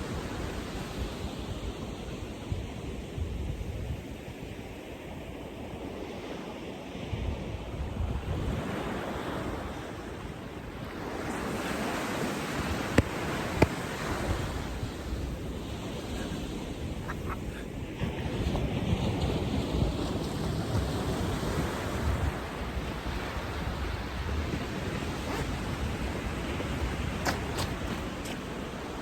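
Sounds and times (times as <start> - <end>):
wind buffeting microphone: 7.1 - 29.0
sea waves breaking: 8.3 - 29.0.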